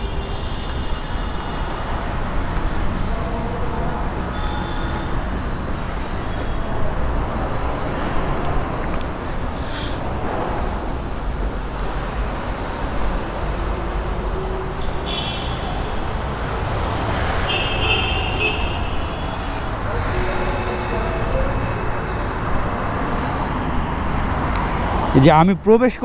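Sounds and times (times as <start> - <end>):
road traffic rumble: 0.0 - 26.0.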